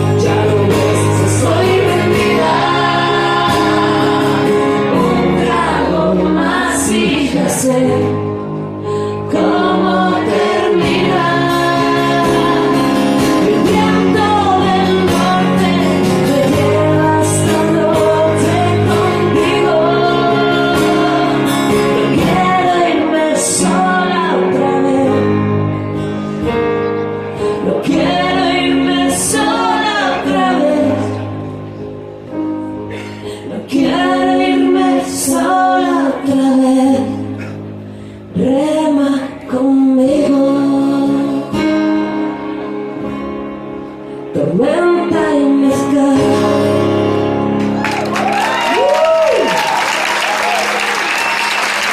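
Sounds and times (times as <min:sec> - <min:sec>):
woman and man singing: 0:00.0 - 0:08.4, 0:09.0 - 0:25.5, 0:27.5 - 0:31.4, 0:33.3 - 0:37.6, 0:38.3 - 0:42.8, 0:44.3 - 0:47.3
live pop song with band: 0:00.0 - 0:51.9.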